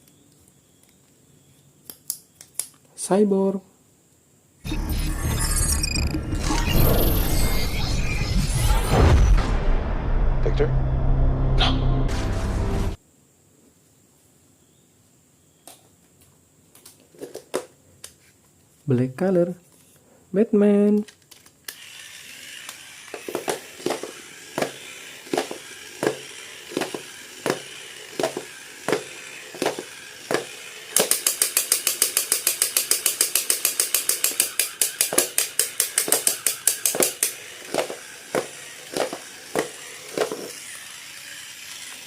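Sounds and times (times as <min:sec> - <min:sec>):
sharp clicks: 0:30.9 - 0:38.0.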